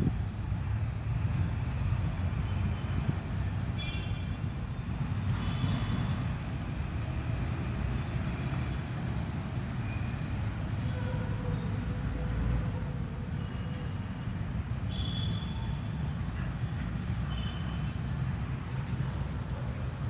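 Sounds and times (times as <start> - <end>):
low rumble of heavy traffic: 0.0 - 20.0.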